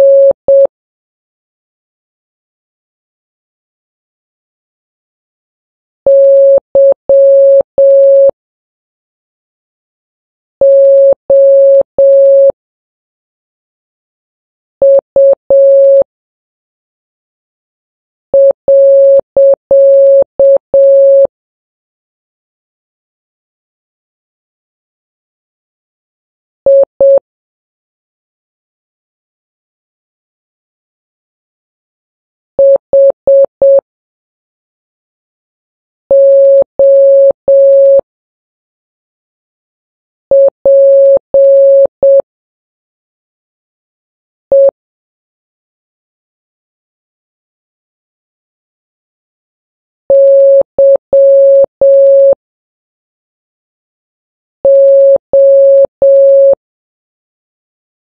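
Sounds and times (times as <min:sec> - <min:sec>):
morse code beeps: 0:00.0 - 0:00.7, 0:06.1 - 0:08.3, 0:10.6 - 0:12.5, 0:14.8 - 0:16.0, 0:18.4 - 0:21.3, 0:26.7 - 0:27.2, 0:32.6 - 0:33.8, 0:36.1 - 0:38.0, 0:40.3 - 0:42.2, 0:44.5 - 0:44.7, 0:50.1 - 0:52.4, 0:54.7 - 0:56.6.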